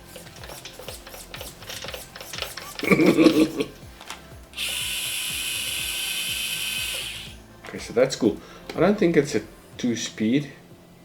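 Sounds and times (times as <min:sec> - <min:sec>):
electric motor and gears whirring: 0:00.0 - 0:10.5.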